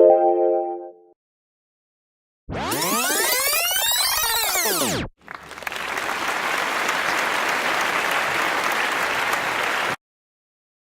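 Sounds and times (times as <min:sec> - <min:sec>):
crowd applause: 0:05.2 - 0:10.0.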